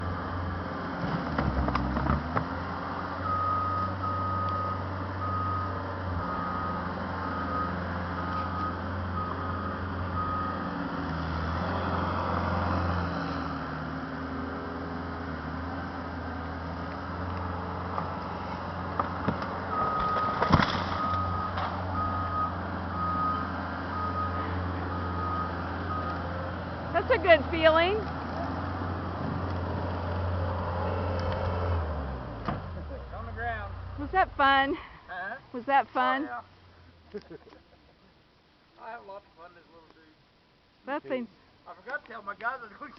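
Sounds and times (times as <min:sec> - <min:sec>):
back-up alarm beeping: 0:21.0 - 0:26.2.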